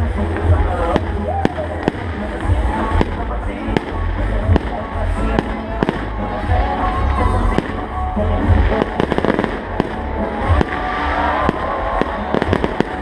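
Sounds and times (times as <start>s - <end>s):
fireworks crackling: 0.0s - 13.0s
fireworks bangs: 8.5s - 13.0s.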